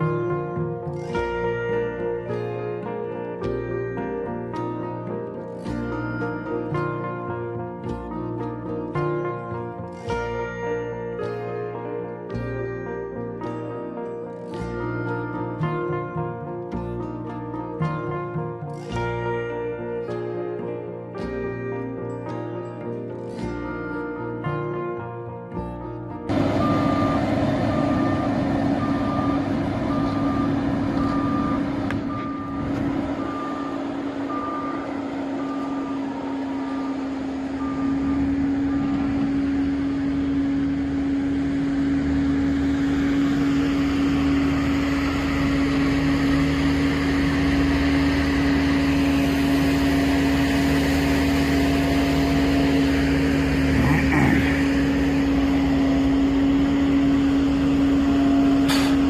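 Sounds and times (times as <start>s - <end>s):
diesel engine running: 0.0s - 25.0s, 25.6s - 59.0s
reversing alarm beeping: 26.3s - 59.0s.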